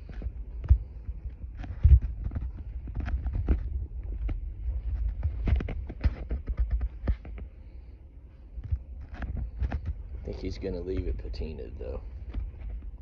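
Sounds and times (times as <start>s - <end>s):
irregular knocks and clicks: 0.0s - 7.8s, 8.5s - 10.2s
steady low rumble: 0.0s - 13.0s.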